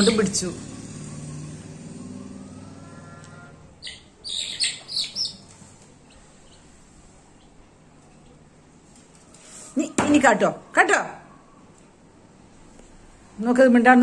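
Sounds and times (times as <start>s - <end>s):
bird chirping: 0.0s - 8.5s.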